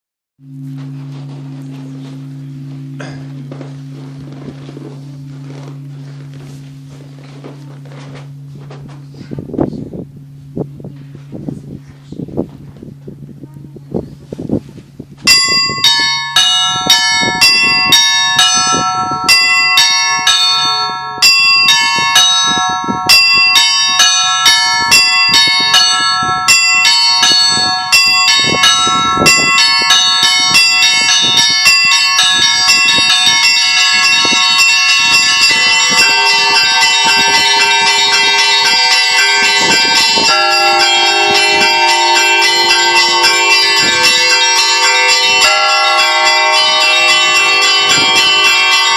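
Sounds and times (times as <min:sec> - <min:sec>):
church bells ringing: 0:15.2 - 0:48.9.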